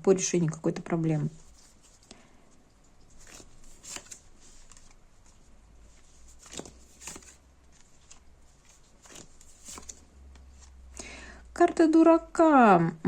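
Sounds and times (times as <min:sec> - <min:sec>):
cards clicking and rustling: 0:01.4 - 0:02.2, 0:02.8 - 0:10.8.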